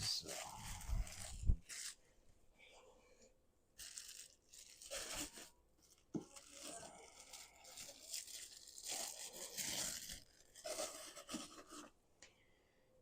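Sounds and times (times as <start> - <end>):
plastic and paper rustling: 0.0 - 2.0, 3.8 - 11.9.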